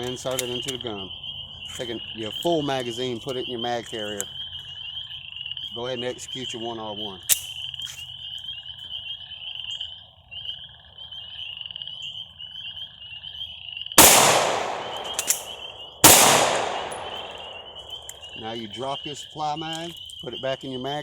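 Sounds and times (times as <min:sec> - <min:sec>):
frogs chorus: 0:00.0 - 0:21.0
pistol shots echoing: 0:14.0 - 0:18.5.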